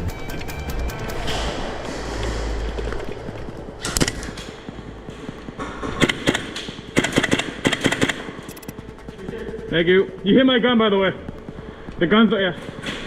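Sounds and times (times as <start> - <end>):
airsoft rifles firing: 3.8 - 8.7.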